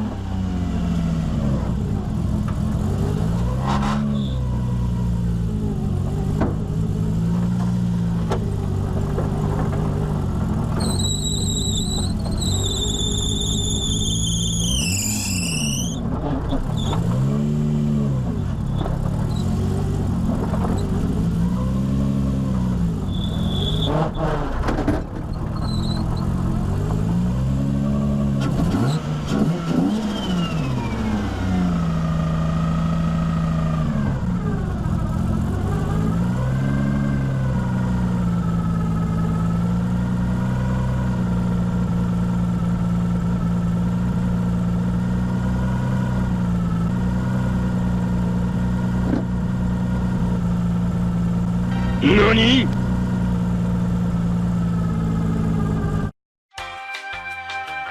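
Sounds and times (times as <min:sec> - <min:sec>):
alternator belt squeal: 0:03.6 - 0:04.6, 0:10.8 - 0:17.0, 0:23.1 - 0:24.2, 0:25.6 - 0:26.3.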